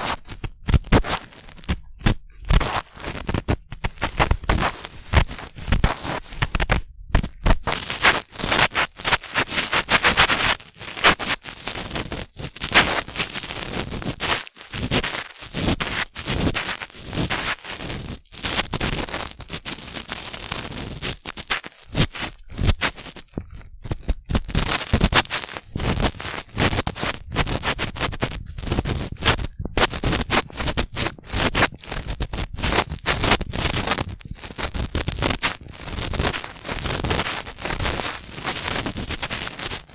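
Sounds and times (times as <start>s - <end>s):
cotton swabs scraping microphone: 0.0s - 11.4s, 24.1s - 39.9s.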